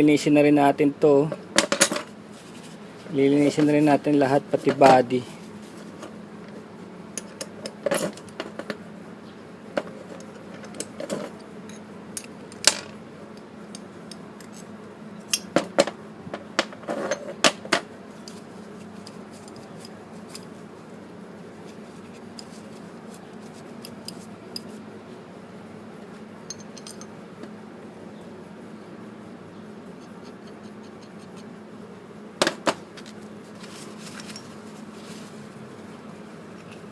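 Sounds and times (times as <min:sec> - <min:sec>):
steady low hum: 0:00.0 - 0:36.9
metal tools and parts clinking: 0:07.2 - 0:08.8, 0:26.5 - 0:27.2, 0:32.4 - 0:34.7.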